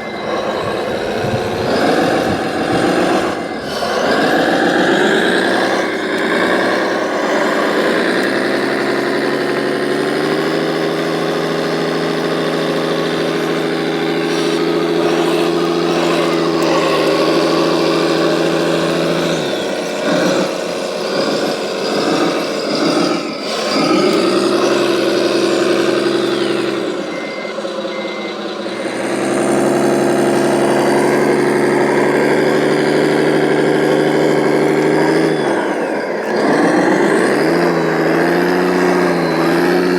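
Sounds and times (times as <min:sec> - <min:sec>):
short beeps: 0:00.0 - 0:07.6, 0:12.0 - 0:31.4
model truck engine running: 0:00.0 - 0:39.9.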